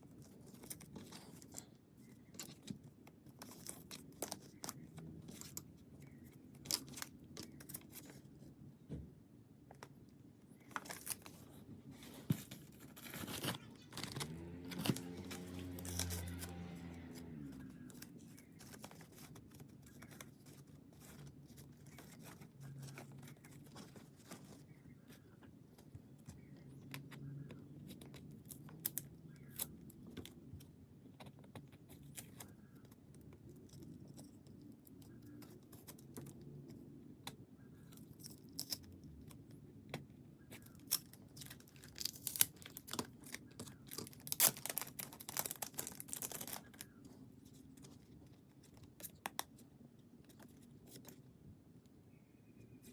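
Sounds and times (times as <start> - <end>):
packaging crinkling and tearing: 10.6 - 24.7, 40.6 - 47.0.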